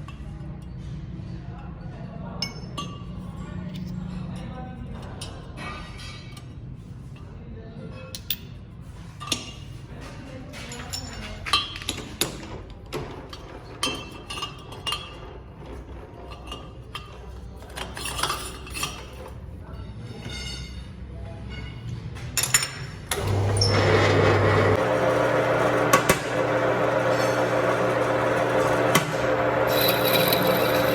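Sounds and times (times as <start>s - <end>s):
machine humming and hissing: 23.1s - 30.9s.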